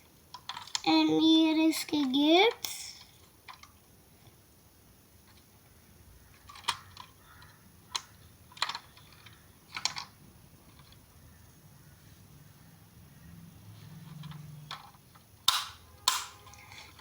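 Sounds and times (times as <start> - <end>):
toy car doors clicking: 0.3 - 1.0, 6.4 - 11.0, 14.0 - 17.0.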